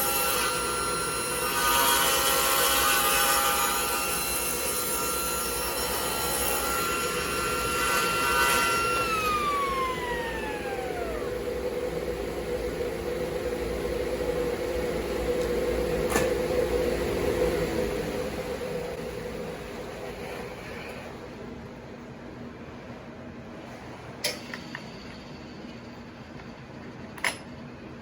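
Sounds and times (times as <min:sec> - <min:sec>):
table saw motor whine: 0:00.0 - 0:19.9
machine hum: 0:05.7 - 0:23.6.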